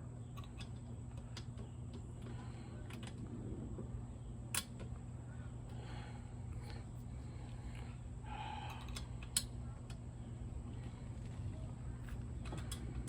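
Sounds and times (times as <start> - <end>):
low hum: 0.0 - 13.0.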